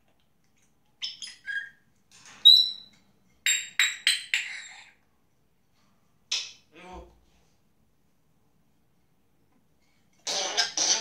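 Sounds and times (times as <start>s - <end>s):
parrot sharp calls: 10.2s - 11.0s.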